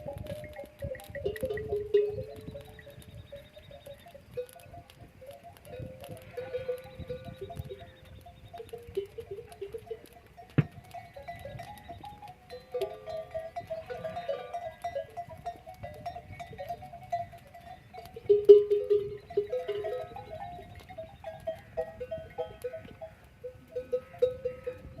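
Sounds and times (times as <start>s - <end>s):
wind rumbling on microphone: 0.0s - 25.0s
livestock bleating: 6.1s - 8.1s.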